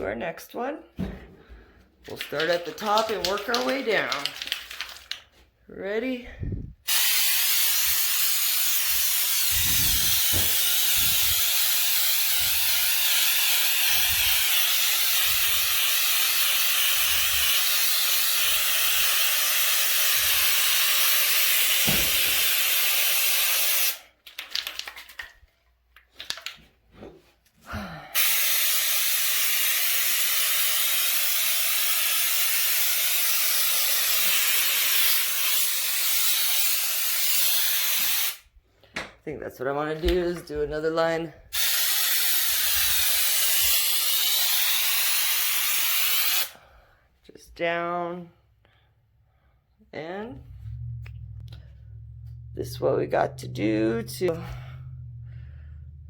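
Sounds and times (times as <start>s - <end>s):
aerosol can spraying: 2.2s - 5.1s, 6.8s - 24.9s, 28.2s - 38.4s, 41.5s - 46.6s.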